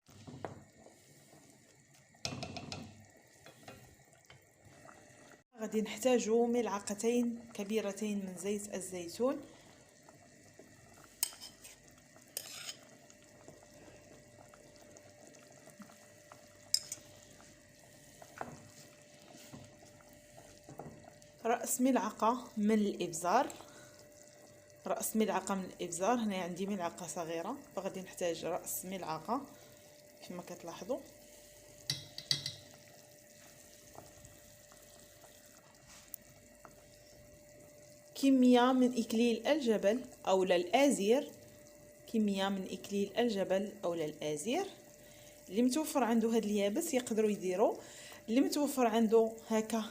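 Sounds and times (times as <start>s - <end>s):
faint steady hiss: 0.1s - 49.9s
thin steady hum: 0.1s - 49.9s
spoon scraping: 12.4s - 12.9s, 16.7s - 17.1s
spoon clinking against dishes: 16.8s - 17.0s, 31.9s - 32.7s.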